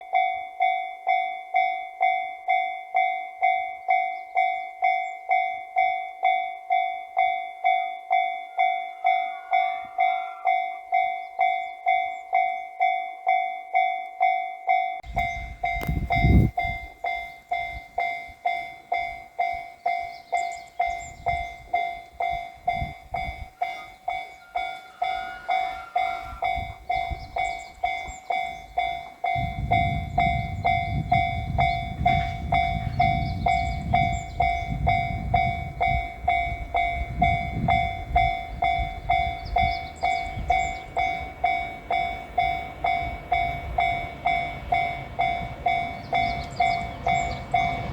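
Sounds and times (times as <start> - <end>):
level-crossing warning bell ringing: 0.0 - 47.9
train rumbling: 15.0 - 47.9.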